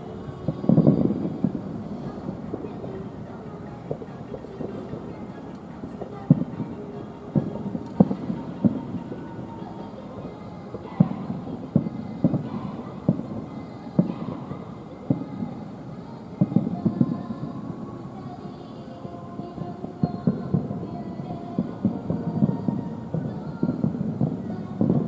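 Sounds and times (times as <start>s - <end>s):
distant fireworks booming: 0.0s - 17.9s.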